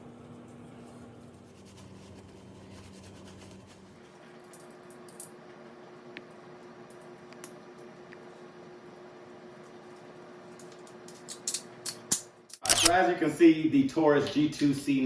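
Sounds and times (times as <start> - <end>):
metal parts clicking: 11.2 - 13.0.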